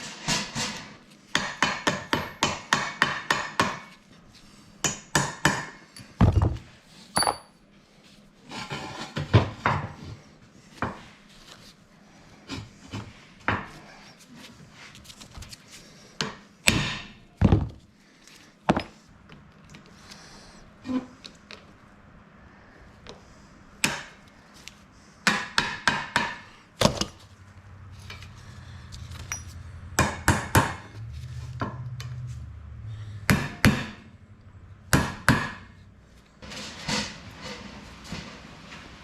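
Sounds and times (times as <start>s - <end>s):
low steady hum: 26.5s - 38.9s
hand tools knocking and clanking: 29.2s - 30.8s.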